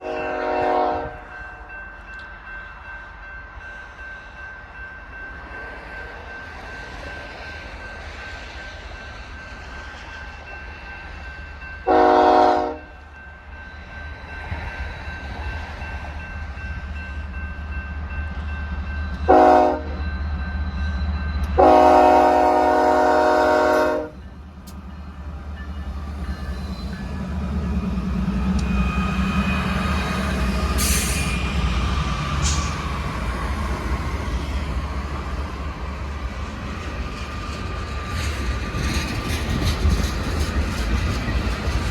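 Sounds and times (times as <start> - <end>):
locomotive air horn blasts: 0.0 - 1.2, 11.9 - 12.9, 19.3 - 20.0, 21.6 - 24.2.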